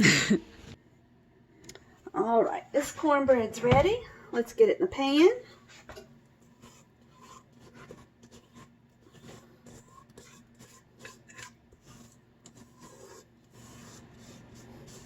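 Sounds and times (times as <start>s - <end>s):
utensil scraping mixing bowl: 5.4s - 15.0s.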